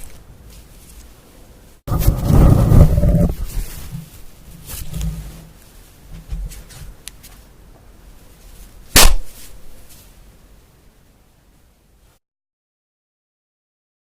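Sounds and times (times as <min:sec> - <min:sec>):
sharp loud click: 0:09.0 - 0:09.4.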